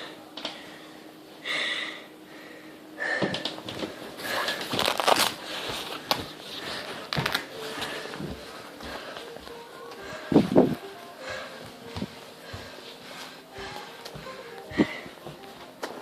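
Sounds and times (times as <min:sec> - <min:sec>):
rustling and crinkling: 0:03.6 - 0:09.2.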